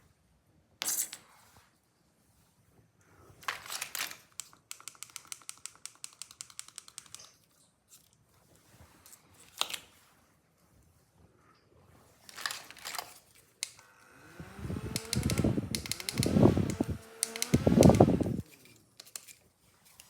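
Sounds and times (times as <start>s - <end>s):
hard plastic parts clattering: 3.4s - 5.6s, 12.3s - 13.5s
rapid even clicks: 4.4s - 7.3s, 14.4s - 19.3s
plastic snap: 14.6s - 19.3s.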